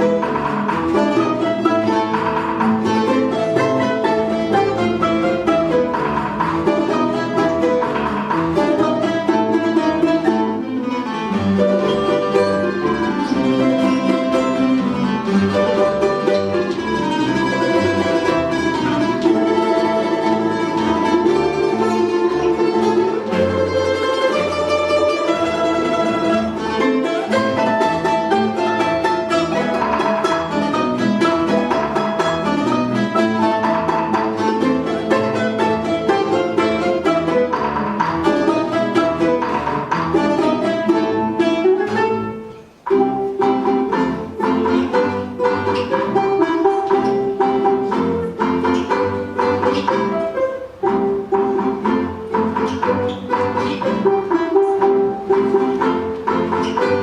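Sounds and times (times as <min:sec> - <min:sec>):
folk ensemble playing a polka: 0:00.0 - 0:57.0.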